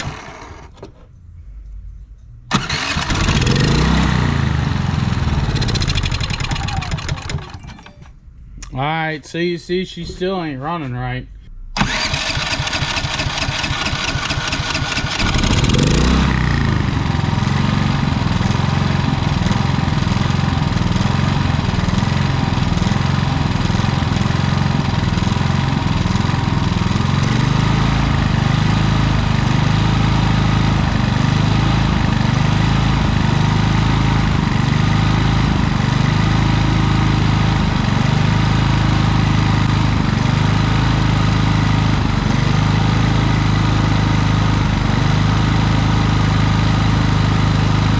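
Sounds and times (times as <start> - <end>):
generator engine surging: 0.0 - 0.7, 2.5 - 7.8, 11.7 - 47.9.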